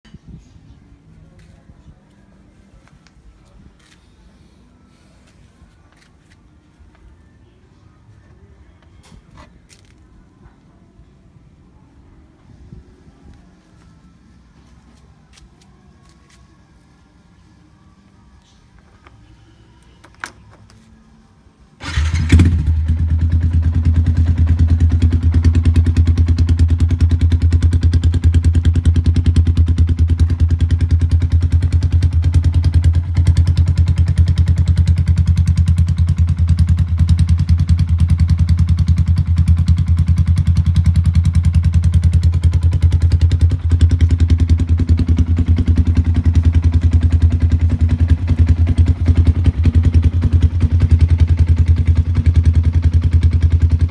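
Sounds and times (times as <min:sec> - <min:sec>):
motorcycle engine starting and idling: 0:21.8 - 0:53.9.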